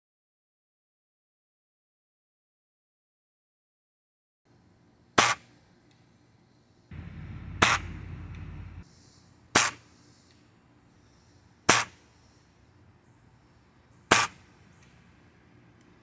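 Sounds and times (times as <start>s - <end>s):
rushing noise: 6.9s - 8.8s
sharp cracks: 6.9s - 8.8s.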